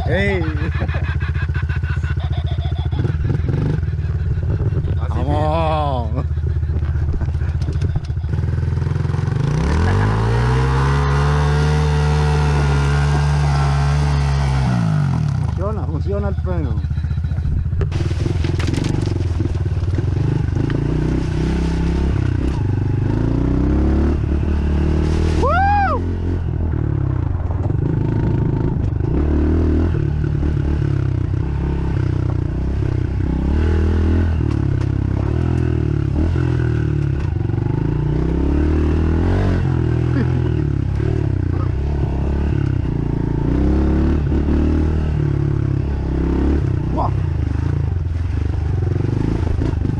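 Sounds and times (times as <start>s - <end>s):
dirt bike engine revving: 0.0s - 27.1s, 27.7s - 49.9s.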